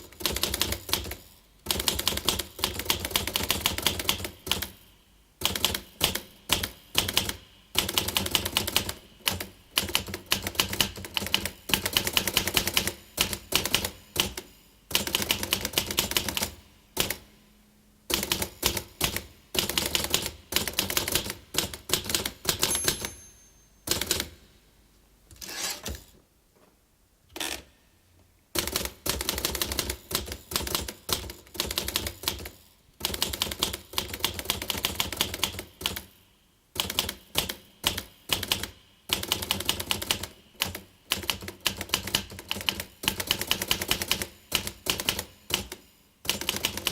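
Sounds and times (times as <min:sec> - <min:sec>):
typewriter keys clacking: 0:00.0 - 0:04.8, 0:05.4 - 0:17.2, 0:18.1 - 0:24.3, 0:28.6 - 0:36.1, 0:36.8 - 0:46.9
typewriter bell ring: 0:00.2 - 0:04.9, 0:10.0 - 0:16.5, 0:18.2 - 0:24.4, 0:29.1 - 0:36.2, 0:36.8 - 0:46.9.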